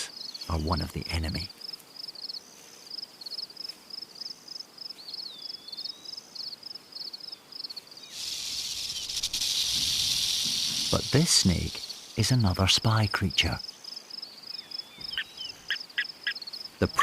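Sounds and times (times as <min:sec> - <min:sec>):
crickets chirping: 0:00.0 - 0:17.0
rattlesnake tail rattle buzz: 0:08.1 - 0:12.2.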